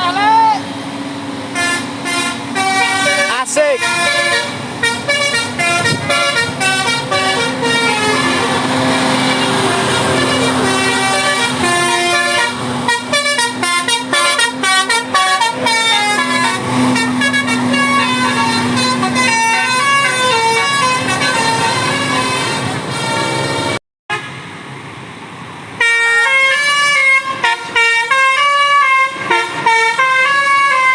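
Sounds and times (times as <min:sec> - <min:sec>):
bus air horns playing tunes: 0:01.5 - 0:24.4, 0:25.8 - 0:30.9.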